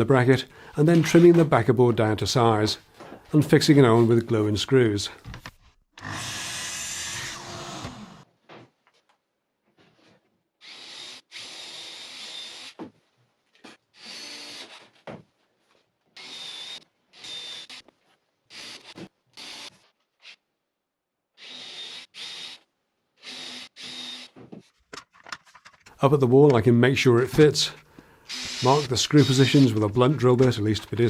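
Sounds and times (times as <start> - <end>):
cordless drill driving screws: 6.0 - 8.2, 10.6 - 12.8, 13.7 - 15.0, 16.2 - 17.8, 18.5 - 20.4, 21.4 - 24.4, 28.3 - 29.8
power tool on plywood: 6.0 - 8.2, 28.3 - 29.7.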